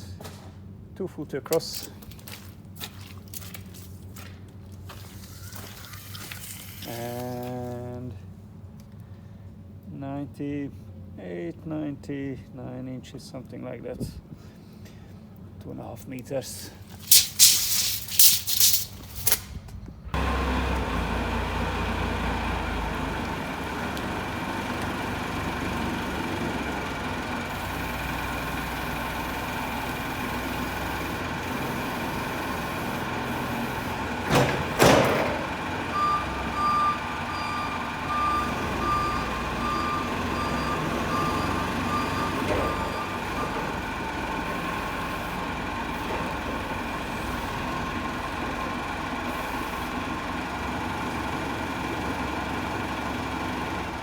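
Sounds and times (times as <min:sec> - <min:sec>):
forklift engine running: 0:19.0 - 0:54.0
reversing alarm beeping: 0:27.5 - 0:45.5
loud clunks: 0:34.0 - 0:35.9.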